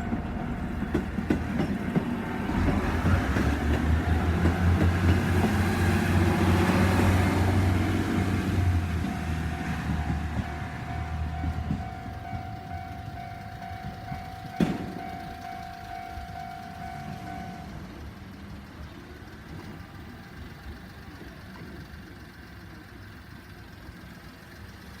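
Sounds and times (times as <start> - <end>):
level-crossing alarm ringing: 4.2 - 18.2
sharp clunk: 14.5 - 15.1.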